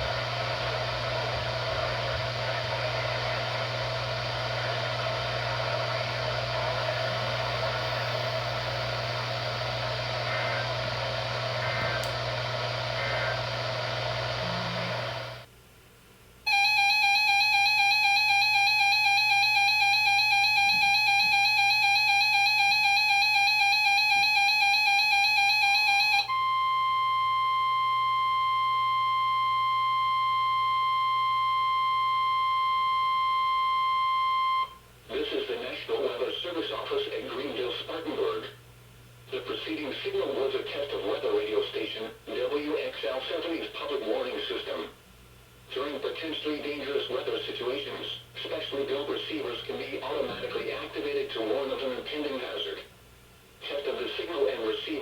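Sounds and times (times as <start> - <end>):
steady alarm tone: 0.0 - 15.4, 16.5 - 34.8
low hum: 0.0 - 15.5
radio hiss: 0.0 - 15.5, 35.1 - 38.6, 39.2 - 45.0, 45.7 - 53.0, 53.6 - 55.0.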